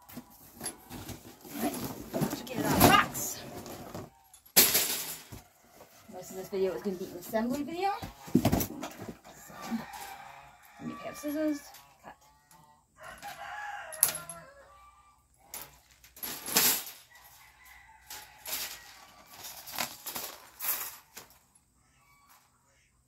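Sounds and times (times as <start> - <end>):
packing rustling and tearing: 0.2 - 4.2, 18.2 - 21.3.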